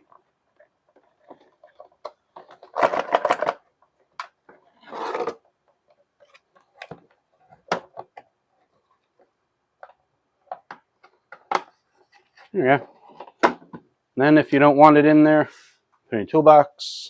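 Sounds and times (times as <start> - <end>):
plastic scraping rasp: 4.5 - 5.5
plastic clicks and knocks: 9.2 - 12.5.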